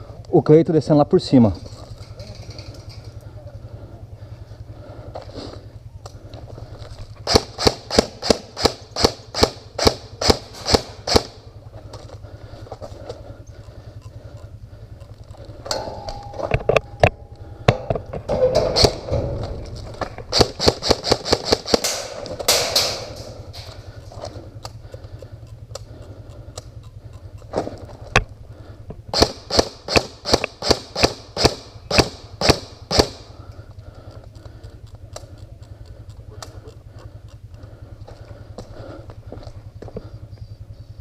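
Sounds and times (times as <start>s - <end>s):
steady low hum: 0.0s - 41.0s
airsoft guns firing: 7.2s - 11.5s, 17.7s - 19.2s, 20.3s - 23.9s, 29.1s - 33.4s.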